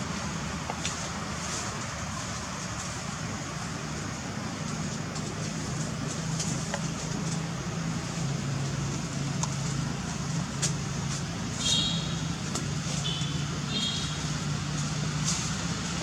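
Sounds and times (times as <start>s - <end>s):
low engine hum: 0.0s - 16.0s
road noise: 0.0s - 16.0s.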